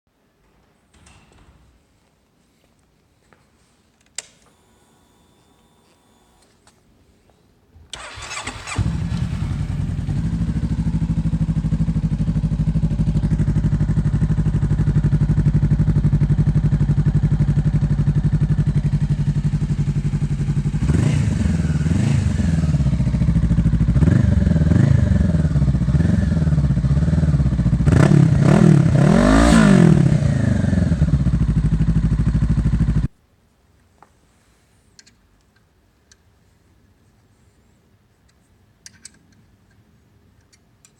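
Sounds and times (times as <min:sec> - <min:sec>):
engine throttle blips: 0:07.9 - 0:13.2
motorcycle engine idling: 0:08.0 - 0:29.3, 0:30.2 - 0:33.1.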